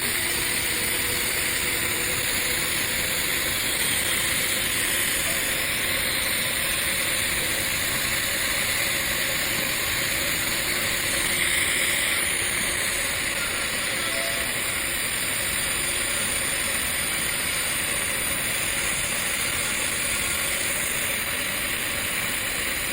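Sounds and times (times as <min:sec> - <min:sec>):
welding arc hissing: 0:00.0 - 0:22.9.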